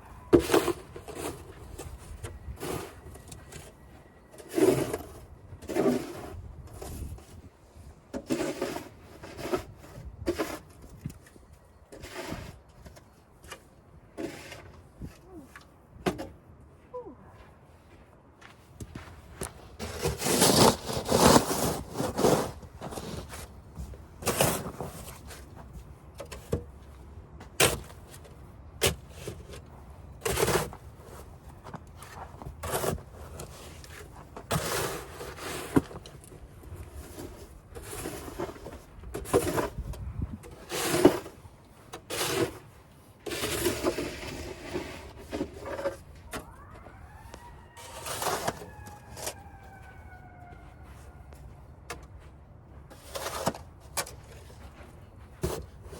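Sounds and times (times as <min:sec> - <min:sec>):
snow shovel scraping snow: 0:04.4 - 0:07.4, 0:08.2 - 0:10.7, 0:11.9 - 0:12.6, 0:14.2 - 0:14.7, 0:19.8 - 0:23.5, 0:24.2 - 0:25.4, 0:32.6 - 0:36.0, 0:36.9 - 0:39.8, 0:40.5 - 0:46.0, 0:47.8 - 0:49.2, 0:52.9 - 0:54.6
emergency siren wailing: 0:46.3 - 0:51.6.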